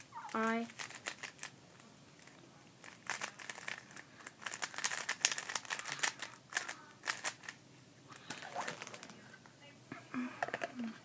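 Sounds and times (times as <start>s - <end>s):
puzzle cube plastic clicks: 0.7s - 1.5s, 2.2s - 7.6s.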